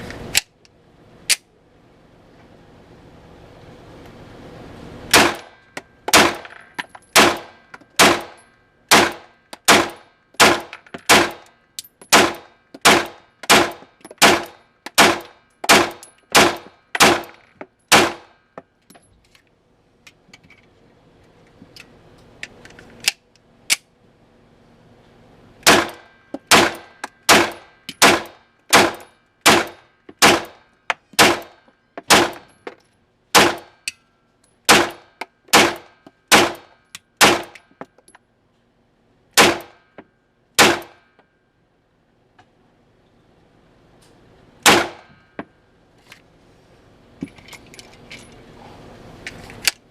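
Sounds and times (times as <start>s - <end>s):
pistol shots: 5.1s - 5.5s, 6.1s - 6.5s, 7.2s - 11.5s, 12.1s - 18.3s, 25.6s - 30.6s, 31.2s - 32.5s, 33.4s - 33.8s, 34.7s - 37.6s, 39.4s - 39.8s, 40.6s - 41.0s, 44.6s - 45.1s.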